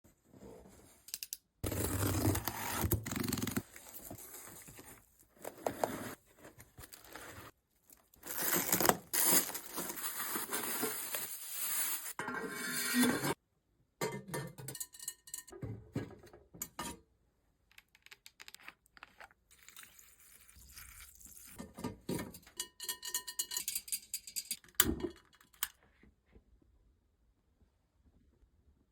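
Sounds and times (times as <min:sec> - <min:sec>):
small metallic clinks and knocks: 0:22.4 - 0:25.7.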